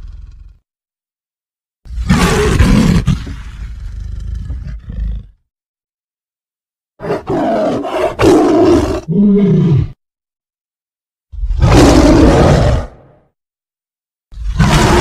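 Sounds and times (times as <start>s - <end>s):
monster roar: 1.9s - 4.9s, 11.4s - 13.2s, 14.4s - 15.0s.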